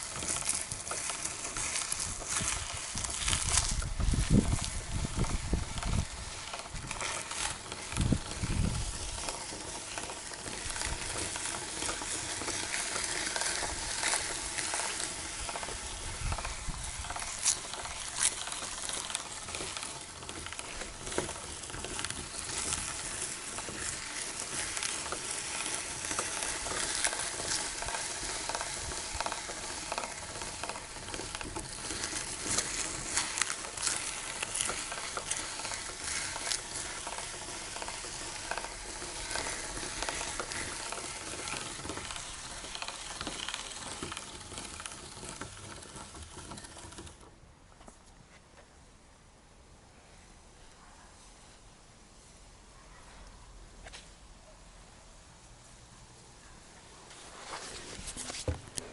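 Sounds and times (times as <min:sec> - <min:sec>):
meat grinder crunching waffles: 0:00.0 - 0:47.3.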